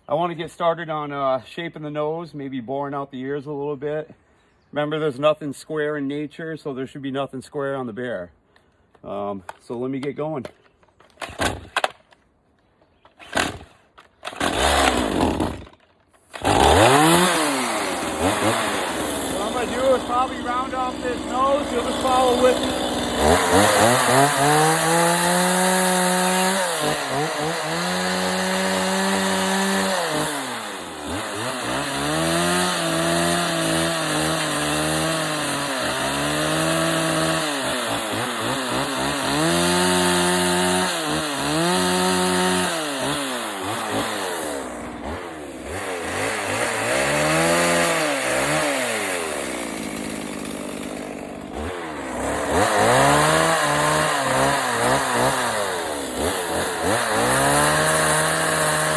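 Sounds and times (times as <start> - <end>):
chainsaw cutting wood: 11.0 - 12.2, 13.0 - 58.9.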